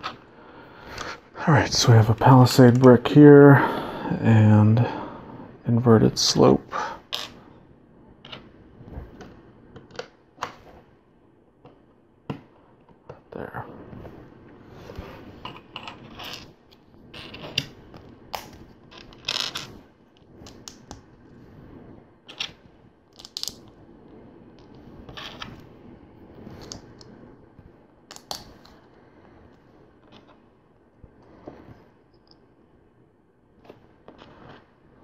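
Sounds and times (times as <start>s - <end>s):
soft rustle of handling: 28.5s - 32.5s.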